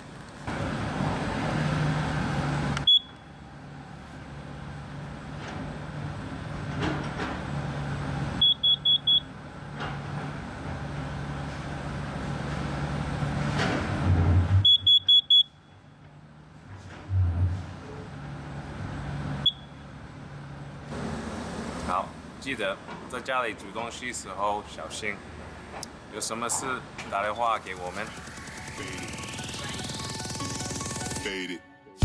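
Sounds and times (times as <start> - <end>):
smoke alarm beeping: 2.8 - 3.2, 8.4 - 9.3, 14.6 - 15.6, 19.4 - 19.8.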